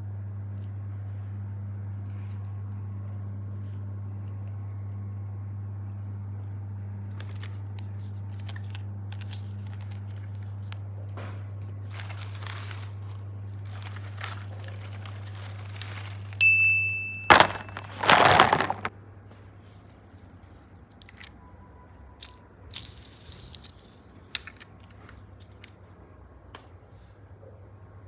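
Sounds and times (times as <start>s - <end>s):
loud crunching crinkling noise: 11.8s - 16.4s, 17.3s - 18.9s
slime and clay being handled: 11.9s - 16.4s, 17.3s - 18.9s
short ringing tone: 16.4s - 17.3s.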